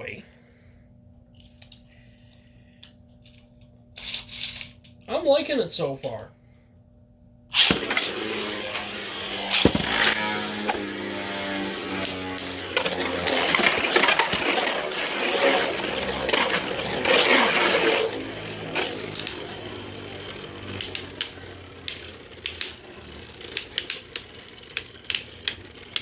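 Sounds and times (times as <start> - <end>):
spinning tops whirring and clashing: 7.5 - 26.0
sharp plastic clicks: 11.9 - 26.0.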